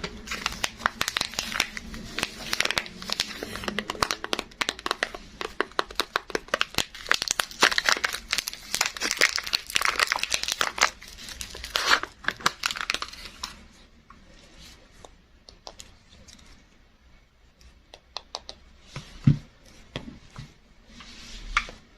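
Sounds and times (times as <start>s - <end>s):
wrapper crinkling and tearing: 0.0s - 13.6s.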